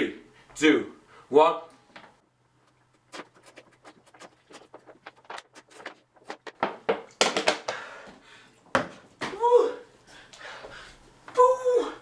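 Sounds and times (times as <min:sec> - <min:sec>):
person gasping for breath: 0:07.7 - 0:08.6.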